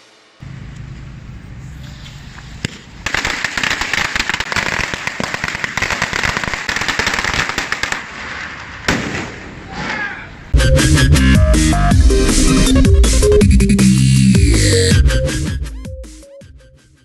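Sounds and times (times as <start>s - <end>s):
low steady hum: 0.4s - 3.0s.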